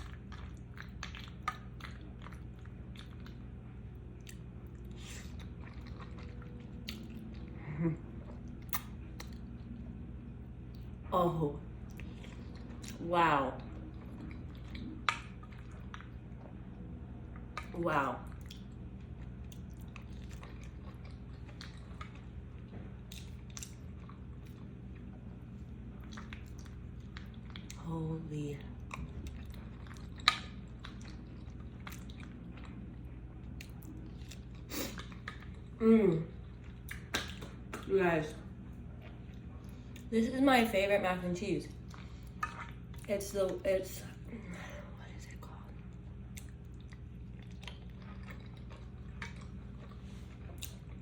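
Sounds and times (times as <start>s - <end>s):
chewing and biting food: 0.0s - 11.0s, 11.7s - 13.0s, 13.6s - 40.1s, 41.7s - 51.0s
steady low hum: 0.0s - 51.0s
wet mouth clicks: 8.6s - 9.4s
wet mouth clicks and smacks: 8.6s - 9.6s, 36.8s - 37.9s.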